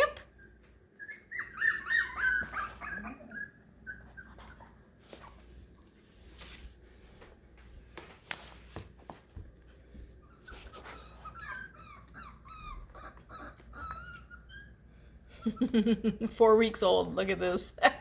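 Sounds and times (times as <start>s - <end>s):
puppies whining: 0.0s - 6.5s, 9.2s - 16.1s.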